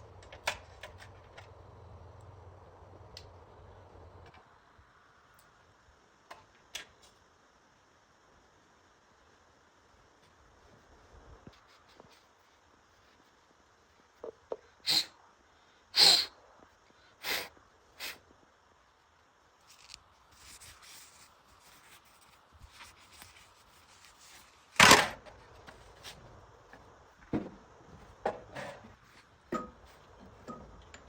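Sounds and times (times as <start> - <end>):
faint rustling and scraping: 10.2 - 14.2, 19.0 - 30.4.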